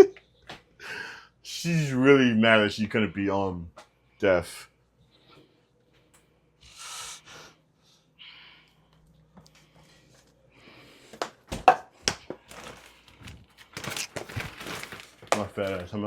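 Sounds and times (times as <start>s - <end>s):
breathy exhales: 6.6s - 7.6s.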